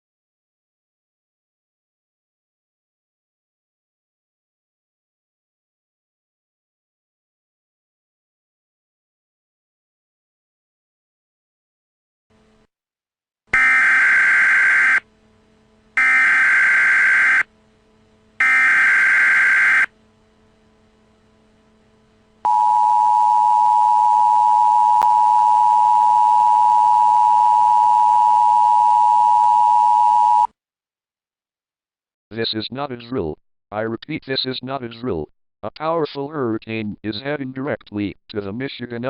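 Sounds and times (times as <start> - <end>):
buzzing data bursts: 13.6 - 15.1, 16.0 - 17.5, 18.4 - 20.0
two-tone attention signal: 18.4 - 19.9.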